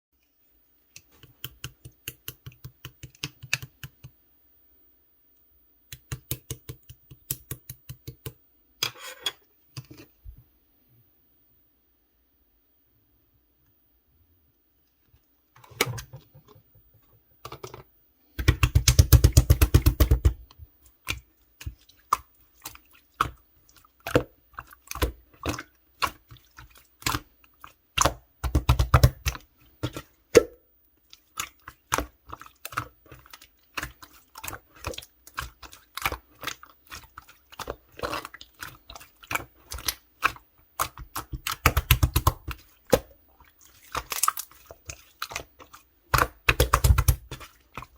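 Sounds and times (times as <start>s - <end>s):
slime squishing with wet pops: 18.3s - 47.9s.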